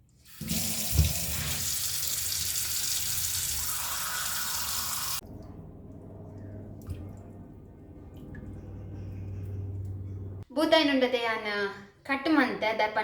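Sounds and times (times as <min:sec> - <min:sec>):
tap water running into sink: 0:00.3 - 0:05.2.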